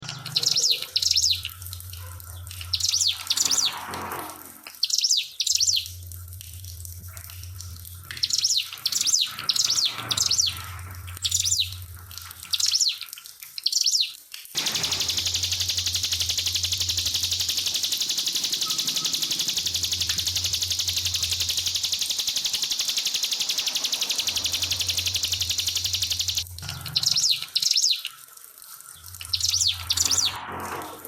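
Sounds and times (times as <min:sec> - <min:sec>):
bird chirping: 0:00.0 - 0:01.6, 0:02.2 - 0:03.9, 0:04.8 - 0:06.0, 0:08.2 - 0:11.8, 0:12.4 - 0:28.1, 0:29.2 - 0:30.4
water trickling: 0:05.8 - 0:13.8, 0:14.6 - 0:30.2
low hum: 0:14.6 - 0:26.7.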